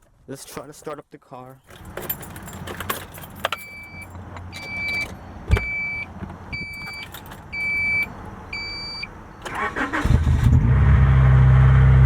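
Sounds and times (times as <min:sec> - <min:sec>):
car keys jangling in ignition: 0:01.6 - 0:05.2, 0:06.6 - 0:08.0
dashboard warning chime beeping: 0:03.5 - 0:09.1.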